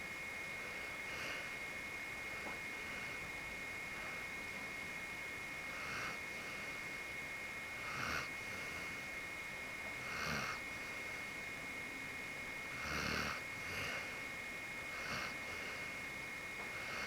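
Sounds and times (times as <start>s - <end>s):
dog snoring: 5.6s - 6.9s, 7.7s - 9.2s, 10.0s - 11.0s, 12.6s - 14.2s, 14.9s - 16.0s, 16.7s - 17.0s.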